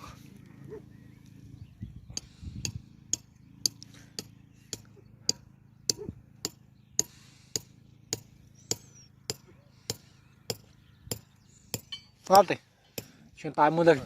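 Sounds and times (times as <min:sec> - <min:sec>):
low hum: 0:00.0 - 0:13.3
sharp regular clicks: 0:02.1 - 0:05.5.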